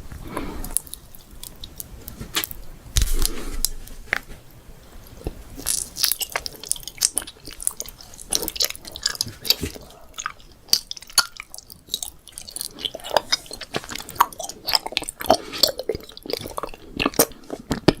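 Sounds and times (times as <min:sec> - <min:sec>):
candy crunching while chewed: 0:00.1 - 0:04.3, 0:04.9 - 0:18.0.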